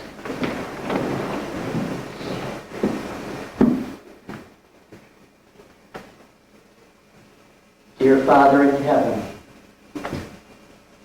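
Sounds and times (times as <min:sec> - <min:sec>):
dull thumps: 0:00.0 - 0:06.3
people shuffling and rustling: 0:00.0 - 0:11.0.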